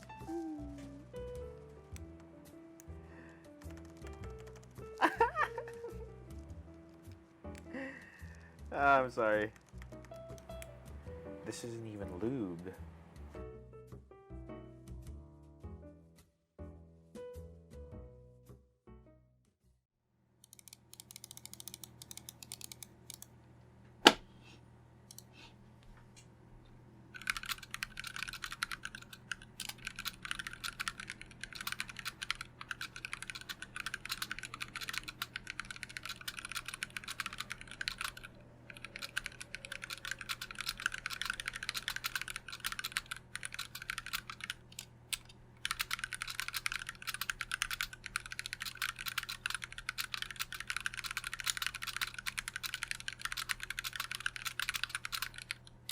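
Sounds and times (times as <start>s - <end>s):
mechanical keyboard typing: 3.6s - 5.2s, 9.5s - 10.7s, 20.4s - 23.3s, 27.2s - 55.9s.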